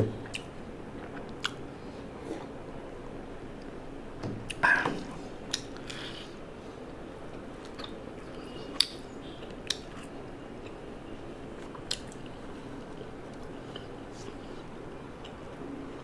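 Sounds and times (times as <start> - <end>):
chewing and biting: 0.2 - 2.5, 7.6 - 10.8, 11.5 - 15.6.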